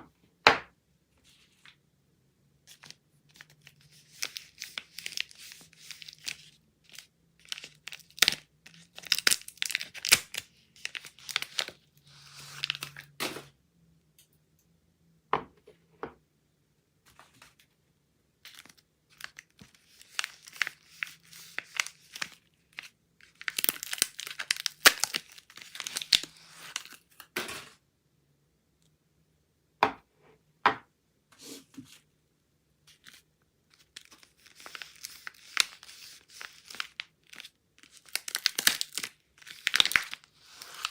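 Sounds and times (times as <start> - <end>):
wrappers tearing and crinkling: 3.4 - 13.2, 18.4 - 27.1, 32.9 - 40.9.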